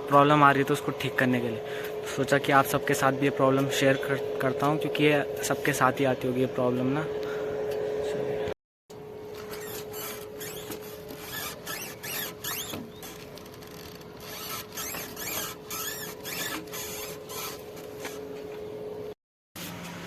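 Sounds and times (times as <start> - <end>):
steady hum: 0.0 - 19.2
short squeaks: 9.3 - 18.4.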